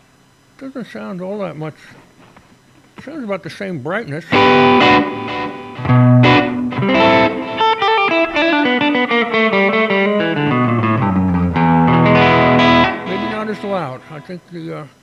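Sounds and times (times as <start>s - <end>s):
electric guitar strummed and picked: 4.3s - 14.5s.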